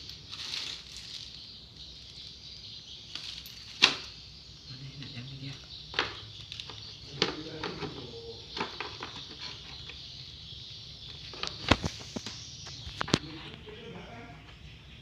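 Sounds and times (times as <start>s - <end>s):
steady hiss: 11.5s - 14.4s.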